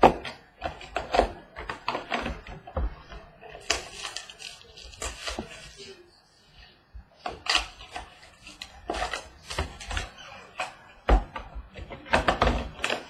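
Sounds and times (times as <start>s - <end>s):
card packs rustling and crinkling: 1.3s - 6.0s.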